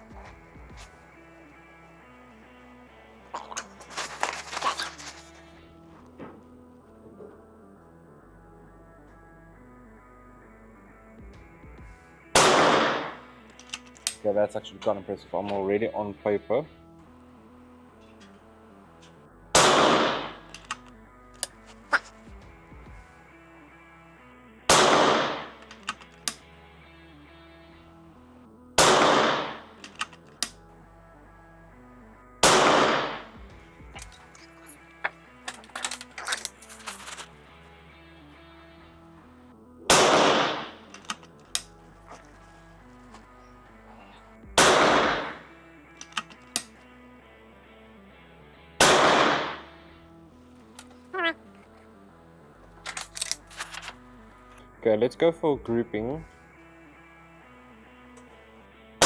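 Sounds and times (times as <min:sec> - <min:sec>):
air rifle shots: 0:12.4 - 0:13.2, 0:19.6 - 0:20.8, 0:24.7 - 0:26.0, 0:28.8 - 0:30.0, 0:32.4 - 0:33.3, 0:39.9 - 0:41.1, 0:44.6 - 0:45.5, 0:48.8 - 0:49.7.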